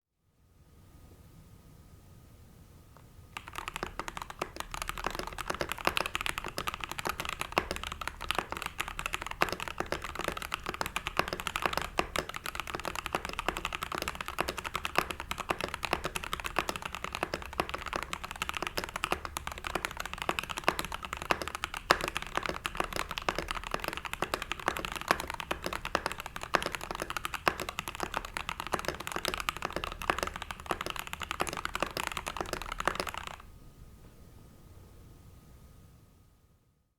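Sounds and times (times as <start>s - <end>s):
typing on mechanical keyboard: 3.3s - 33.5s.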